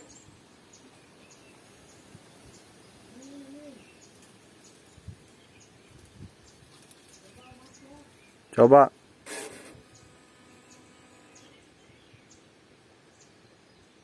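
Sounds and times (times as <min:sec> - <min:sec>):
low cooing call: 0:03.0 - 0:04.0.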